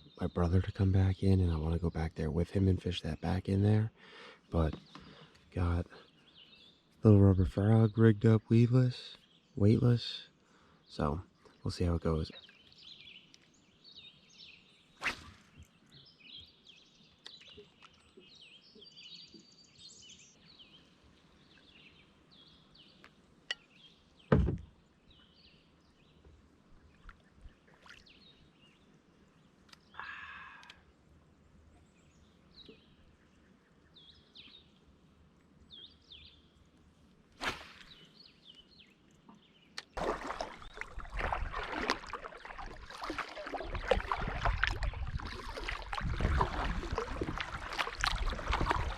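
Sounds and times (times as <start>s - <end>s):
small birds singing: 0.0s - 48.9s
knocks on a kayak: 24.3s - 24.7s
loud low thump: 24.3s - 24.7s
paddle splashing water: 27.0s - 28.4s, 37.4s - 38.1s, 39.8s - 48.9s.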